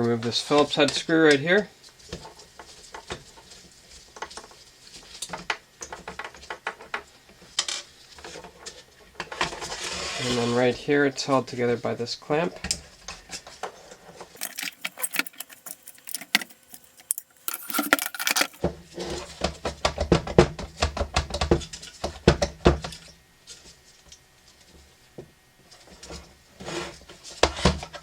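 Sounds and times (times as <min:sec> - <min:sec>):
tools clicking and rattling: 0:14.4 - 0:18.6.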